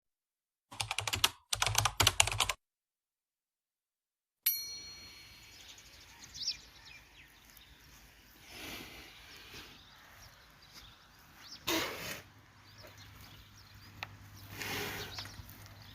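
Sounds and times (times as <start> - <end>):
keyboard typing clicks: 0.7 - 2.6
bright ding: 4.5 - 6.0
small bird chirps: 12.6 - 15.9.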